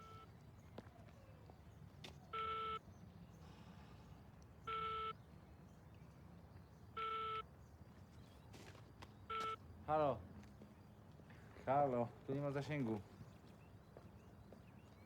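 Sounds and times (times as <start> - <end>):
telephone beeps through earpiece: 0.0 - 0.3, 2.4 - 2.8, 4.7 - 5.2, 7.0 - 7.4, 9.3 - 9.6.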